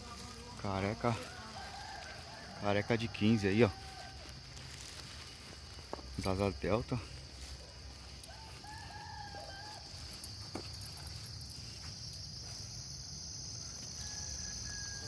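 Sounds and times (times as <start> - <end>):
insects droning: 0.0 - 15.0
rooster crowing: 0.7 - 5.0, 8.0 - 11.1, 13.5 - 15.0.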